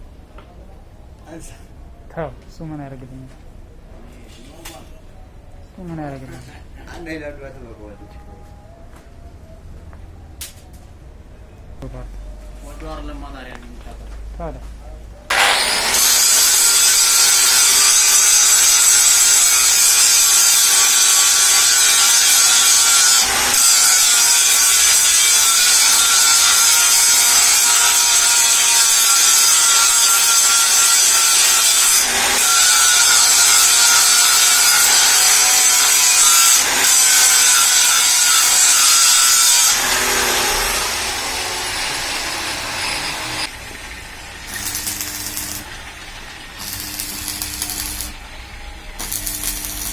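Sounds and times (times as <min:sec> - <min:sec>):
power tool whining under load: 0:15.3 - 0:18.7, 0:44.5 - 0:45.8, 0:46.6 - 0:48.2, 0:49.0 - 0:49.9
motor winding down: 0:46.6 - 0:48.2, 0:49.0 - 0:49.9.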